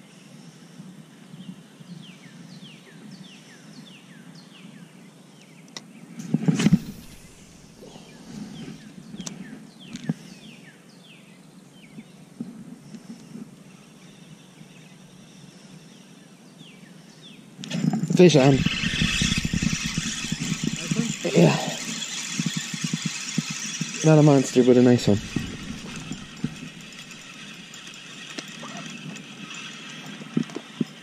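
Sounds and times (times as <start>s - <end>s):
birds chirping: 6.7s - 12.2s, 12.9s - 31.0s.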